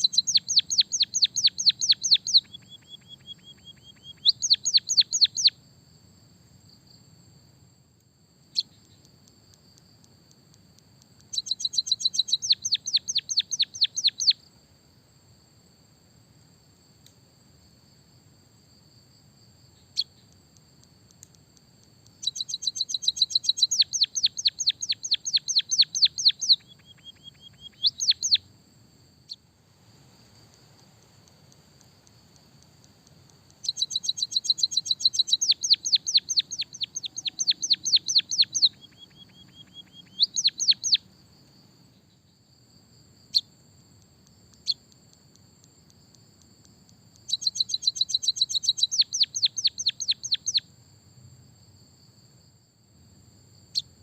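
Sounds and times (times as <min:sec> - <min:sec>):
bird singing rapid trills: 0:00.0 - 0:05.6, 0:08.5 - 0:09.1, 0:11.2 - 0:14.4, 0:19.8 - 0:20.3, 0:22.1 - 0:28.5, 0:33.5 - 0:41.1, 0:47.2 - 0:50.7
faint high buzz: 0:00.0 - 0:48.6.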